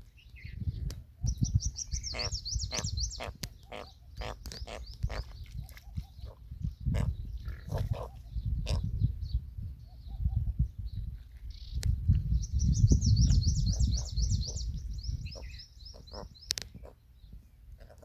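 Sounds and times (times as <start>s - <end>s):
small bird chirping: 0.2s - 8.9s, 9.8s - 18.0s.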